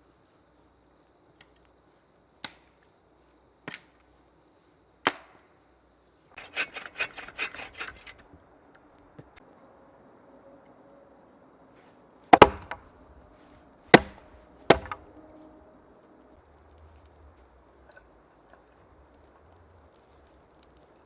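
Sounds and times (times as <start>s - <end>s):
sharp wooden knocks: 12.3s - 12.8s, 13.9s - 15.1s
wood cracking and snapping: 12.3s - 12.9s, 13.9s - 15.1s, 16.4s - 21.0s.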